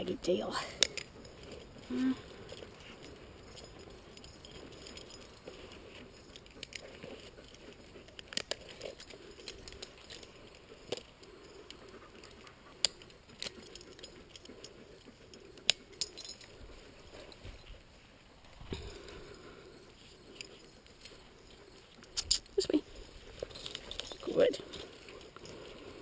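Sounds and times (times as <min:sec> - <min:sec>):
metallic harness clinks: 0:00.0 - 0:26.0.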